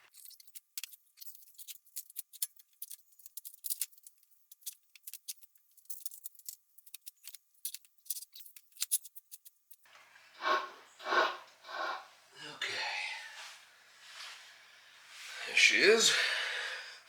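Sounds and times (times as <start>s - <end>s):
light clicks and rattles: 0.1s - 10.0s.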